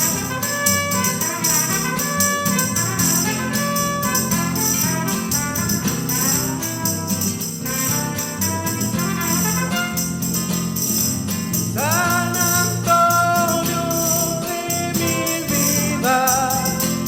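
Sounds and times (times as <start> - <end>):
brass band with strings: 0.0 - 10.8
tambourine jingling: 0.0 - 17.0.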